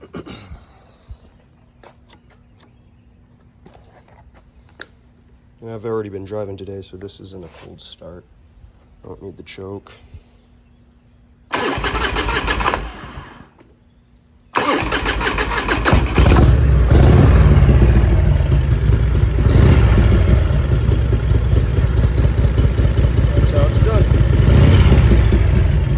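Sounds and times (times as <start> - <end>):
motorcycle engine starting and idling: 11.5 - 13.7, 14.6 - 25.9.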